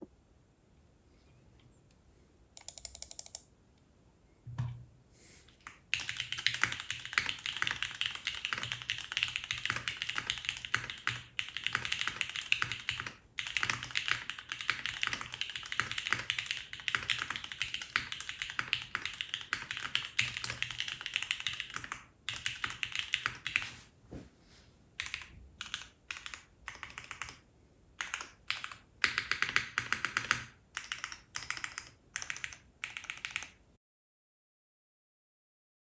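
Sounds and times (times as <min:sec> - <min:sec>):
mechanical keyboard typing: 0:02.6 - 0:03.5, 0:05.6 - 0:23.6, 0:25.0 - 0:27.4, 0:28.0 - 0:33.6.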